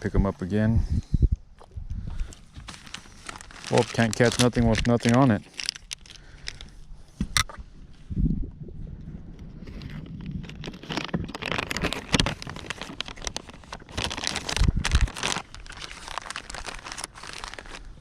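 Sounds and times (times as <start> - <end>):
plastic crinkling: 2.4 - 6.7, 9.8 - 18.0.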